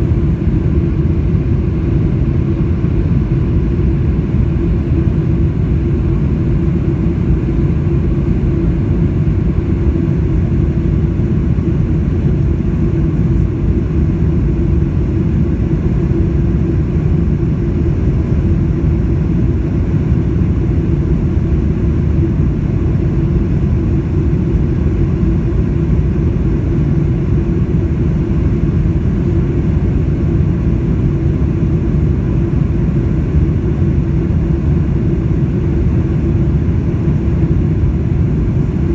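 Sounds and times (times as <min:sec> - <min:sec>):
airplane cabin engine roar: 0:00.0 - 0:38.9.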